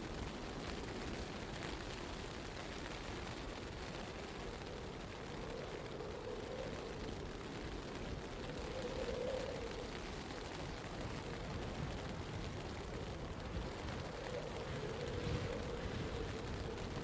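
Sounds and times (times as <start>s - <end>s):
blizzard wind rushing: 0.0s - 17.0s.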